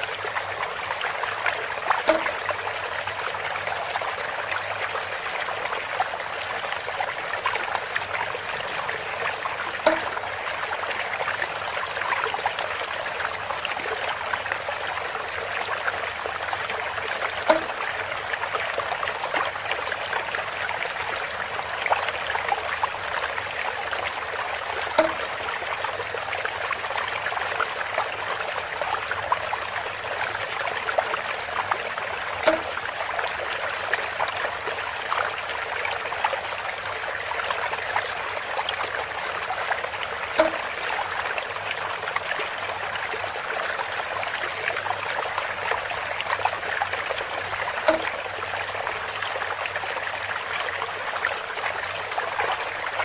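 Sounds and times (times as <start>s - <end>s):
water trickling through bamboo spout: 0.0s - 53.0s
short bamboo knock: 2.0s - 2.5s, 9.8s - 10.2s, 17.5s - 17.8s, 25.0s - 25.3s, 32.4s - 32.8s, 40.4s - 40.6s, 47.9s - 48.1s.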